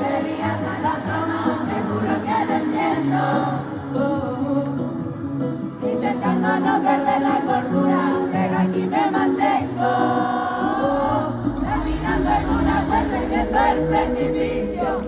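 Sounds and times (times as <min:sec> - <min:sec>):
pop song vocals: 0:00.0 - 0:15.0
backing harmonies: 0:05.8 - 0:15.0
bass line: 0:10.9 - 0:15.0.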